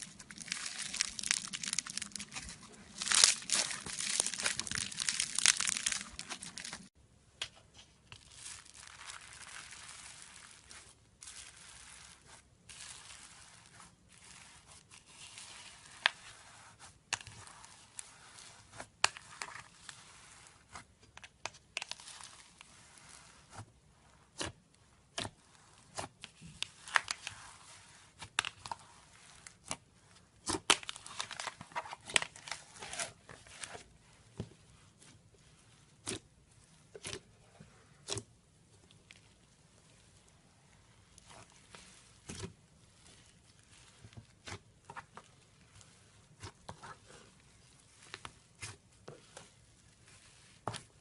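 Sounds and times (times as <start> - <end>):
slime popping and crackling: 0.0 - 6.9, 8.2 - 23.5.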